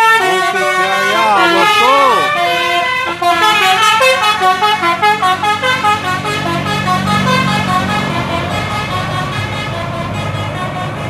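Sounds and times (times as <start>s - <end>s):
musical bus horn melody: 0.0s - 11.0s.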